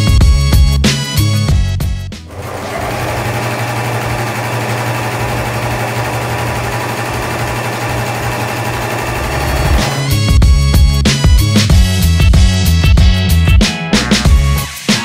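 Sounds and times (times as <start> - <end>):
background music: 0.0 - 2.8, 8.0 - 15.0
sewing machine running: 2.3 - 10.3.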